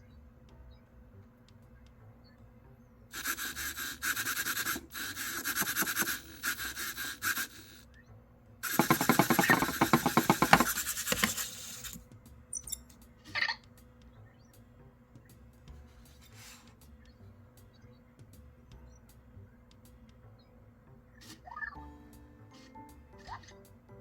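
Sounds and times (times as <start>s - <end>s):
robot rattling: 3.2s - 7.8s, 8.6s - 12.9s
small motors whirring and grinding: 3.2s - 7.9s, 8.6s - 12.0s.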